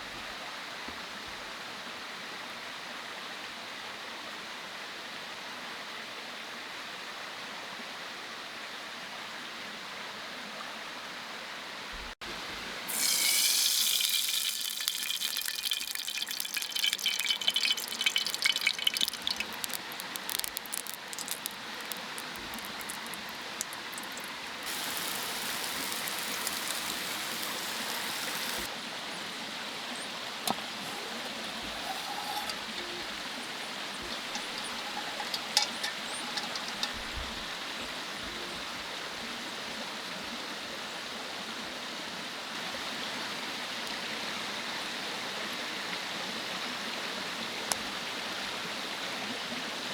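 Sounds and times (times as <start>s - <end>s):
mountain stream running: 11.9s - 49.9s
water splashing and pouring: 12.8s - 28.7s, 30.4s - 37.5s.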